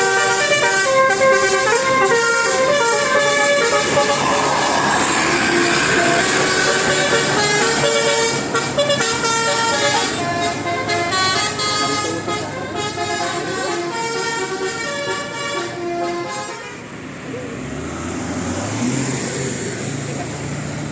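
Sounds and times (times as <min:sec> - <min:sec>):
multi-tone musical air horn: 0:00.0 - 0:16.9.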